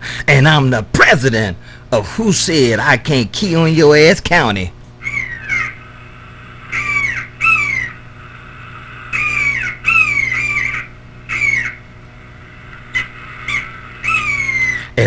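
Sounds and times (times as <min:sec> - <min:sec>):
electrical hum: 0:00.0 - 0:15.0
harsh bird-like squawks: 0:05.0 - 0:15.0.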